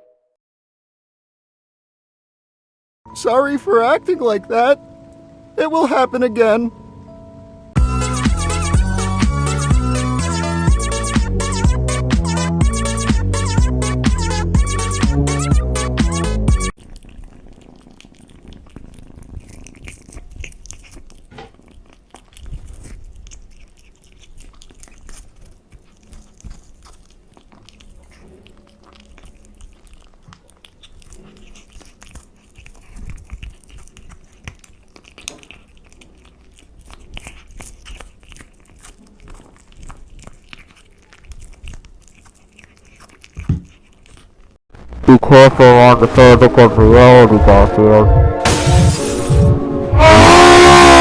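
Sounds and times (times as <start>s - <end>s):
pet chewing and crunching food: 7.8s - 47.3s.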